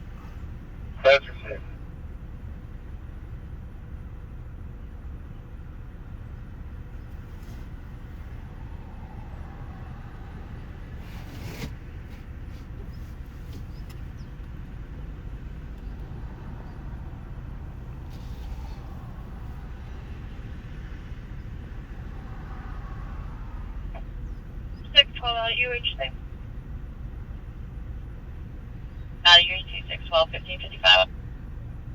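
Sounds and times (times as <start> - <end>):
vehicle engine rumble: 0.0 - 31.9.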